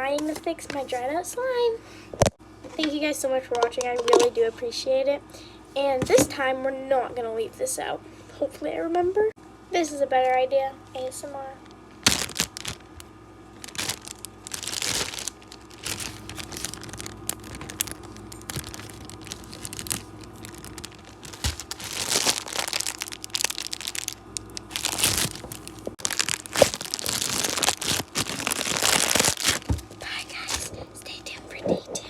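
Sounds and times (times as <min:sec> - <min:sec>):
slime squished by hand: 0:12.0 - 0:13.0, 0:13.6 - 0:30.7.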